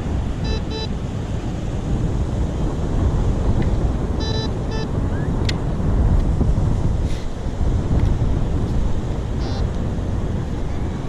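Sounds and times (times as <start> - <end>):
beach surf: 0.0 - 11.0
wind rumbling on microphone: 0.0 - 11.0
metal detector beeps: 0.4 - 0.9, 4.2 - 4.9, 9.4 - 9.6.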